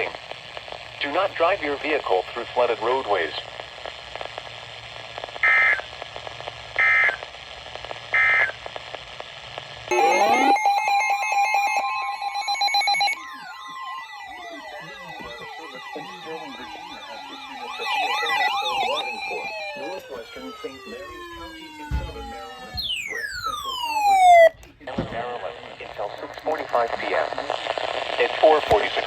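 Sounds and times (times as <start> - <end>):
digital data tone bursts: 9.9 - 21.0
electronic siren-like alert: 9.9 - 24.6.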